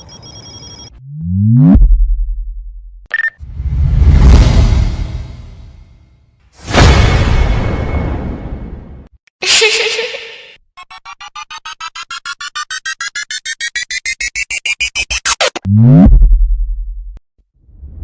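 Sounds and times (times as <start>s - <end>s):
electronic beeps rising in pitch: 0.0s - 0.9s, 10.8s - 15.6s.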